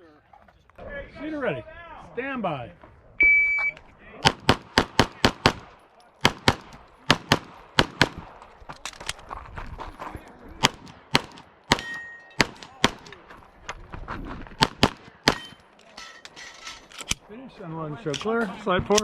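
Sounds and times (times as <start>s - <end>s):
pistol shots: 4.2s - 8.4s, 10.6s - 13.2s, 14.6s - 15.6s.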